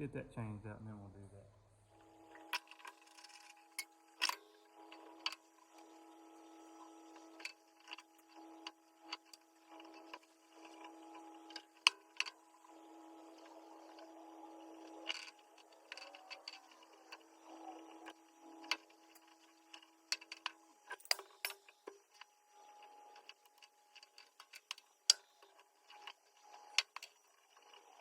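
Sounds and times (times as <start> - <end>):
faint steady hum: 0.0 - 28.0
clicks and taps on switch wiring: 2.3 - 5.4, 18.0 - 27.9.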